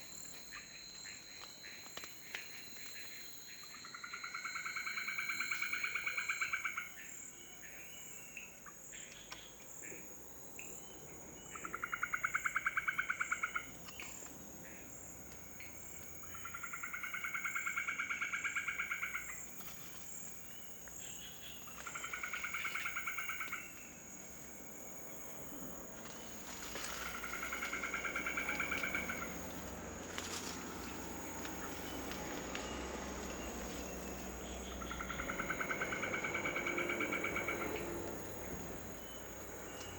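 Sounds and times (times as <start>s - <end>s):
rapidly pulsed animal trill: 33.9s - 38.9s.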